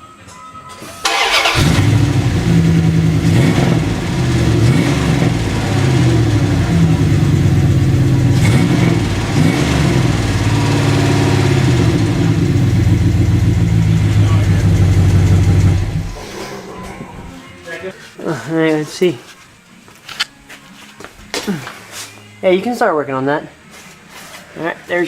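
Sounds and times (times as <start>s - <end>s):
truck engine revving: 1.0s - 17.4s.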